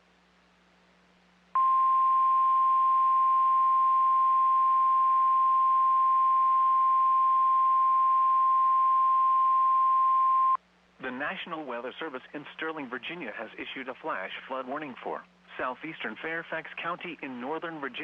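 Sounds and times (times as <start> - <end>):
faint hiss: 10.6 - 18.0.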